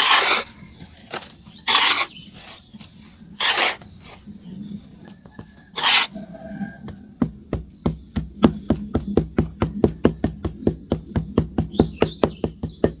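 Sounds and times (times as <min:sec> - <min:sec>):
harsh strokes on charcoal: 0:00.0 - 0:04.8, 0:05.7 - 0:07.2.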